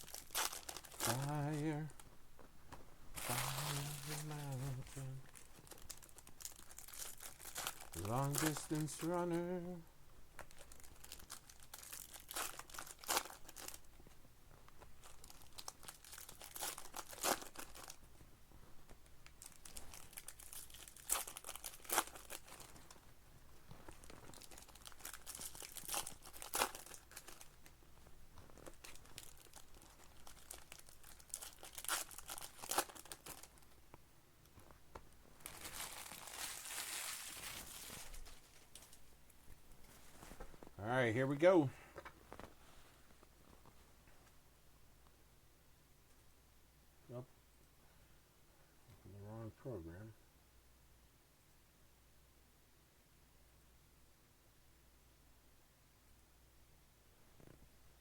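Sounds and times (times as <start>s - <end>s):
card pack wrappers crinkling: 0.0s - 2.1s, 3.1s - 9.7s, 10.4s - 14.2s, 14.8s - 18.0s, 19.2s - 23.1s, 23.7s - 27.8s, 28.4s - 33.8s, 35.4s - 39.1s
wrapper rustling: 0.0s - 2.1s, 3.1s - 9.7s, 10.4s - 14.2s, 14.8s - 33.8s, 34.5s - 40.8s.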